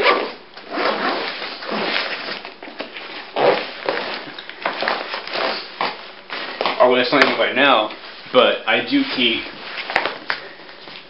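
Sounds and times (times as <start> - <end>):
nylon fabric rustling: 0.0 - 7.0.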